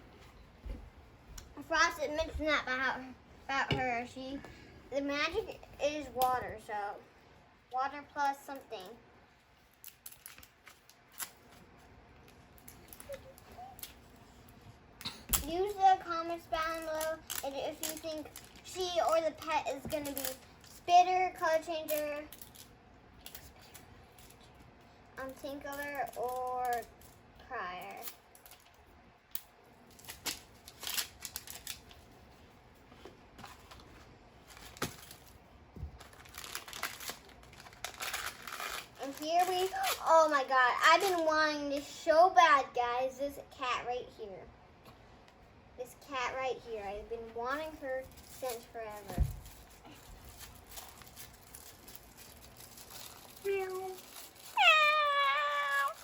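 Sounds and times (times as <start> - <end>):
plastic packaging clicking and crinkling: 9.6 - 14.2, 15.0 - 20.9, 21.8 - 24.5, 25.2 - 27.2, 27.8 - 32.1, 33.4 - 41.9, 48.0 - 56.0
packaging rustling: 29.9 - 32.0, 33.4 - 40.1, 48.1 - 56.0.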